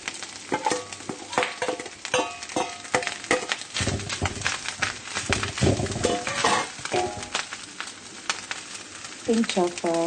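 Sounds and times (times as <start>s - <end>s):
metal spatula clanking on pan: 0.5s - 7.5s.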